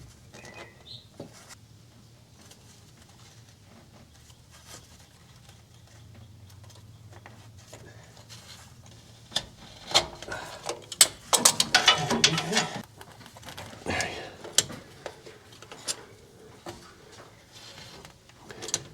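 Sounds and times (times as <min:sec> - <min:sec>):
hand tools clicking and clattering: 0:08.4 - 0:18.9.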